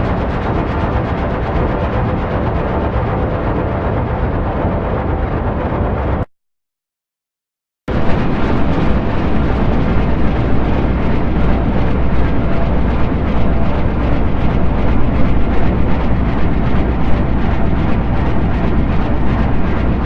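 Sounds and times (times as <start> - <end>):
spaceship deep rumble: 7.9 - 20.0.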